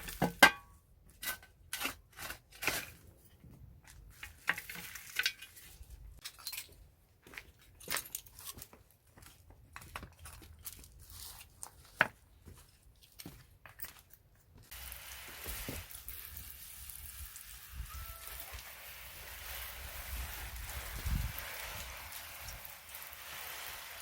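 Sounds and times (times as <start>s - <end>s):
rain hissing: 14.7s - 24.0s.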